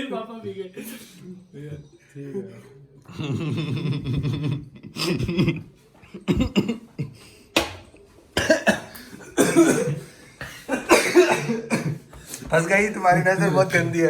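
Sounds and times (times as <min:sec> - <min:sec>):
person coughing: 0:06.2 - 0:06.8, 0:08.4 - 0:12.1.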